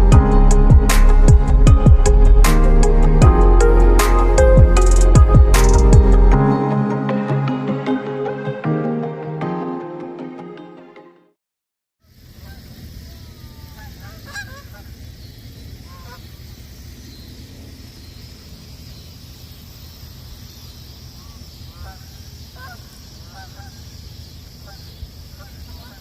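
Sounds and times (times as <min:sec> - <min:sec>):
steady low rumble: 0:00.0 - 0:06.4
birds calling: 0:12.4 - 0:26.0.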